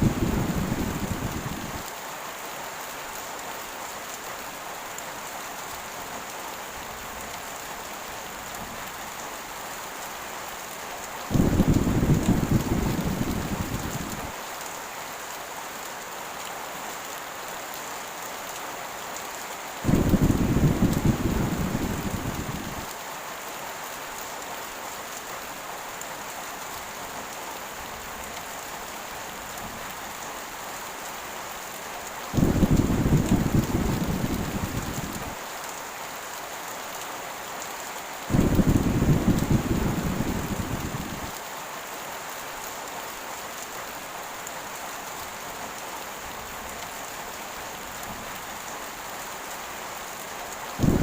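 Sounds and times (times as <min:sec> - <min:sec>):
low thunder rumbles: 0:00.0 - 0:01.8, 0:11.3 - 0:14.3, 0:19.9 - 0:22.9, 0:32.4 - 0:35.3, 0:38.3 - 0:41.3, 0:50.8 - 0:51.0
heavy rain hissing: 0:00.0 - 0:51.0.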